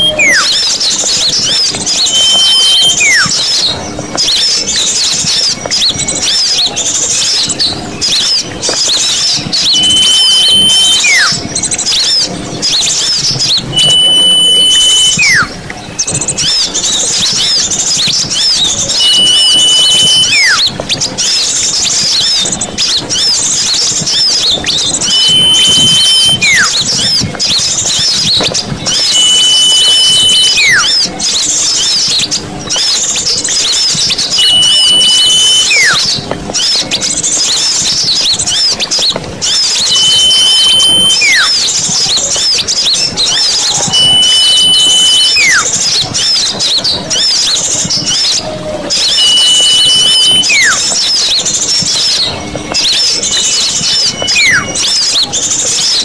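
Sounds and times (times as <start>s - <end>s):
high falling whistle: 0.0s - 3.7s, 9.0s - 12.3s, 12.9s - 17.6s, 18.2s - 20.7s, 24.1s - 27.0s, 27.9s - 31.1s, 34.2s - 36.9s, 39.4s - 46.4s, 47.1s - 56.0s
songbirds chattering and chirping: 0.0s - 56.0s.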